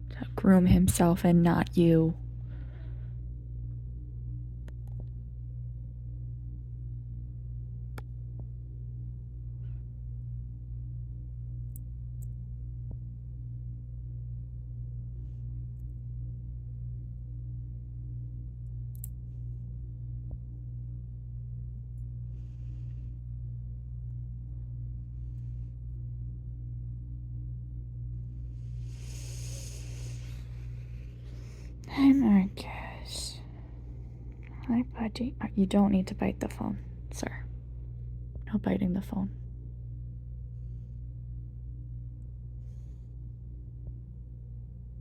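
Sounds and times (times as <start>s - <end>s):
cat purring: 28.6s - 35.6s.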